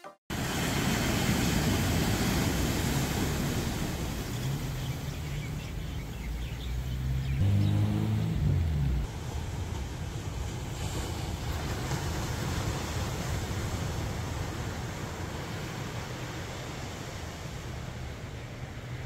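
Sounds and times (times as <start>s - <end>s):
outdoor background noise: 0.3s - 19.0s
vehicle engine humming: 2.8s - 10.4s.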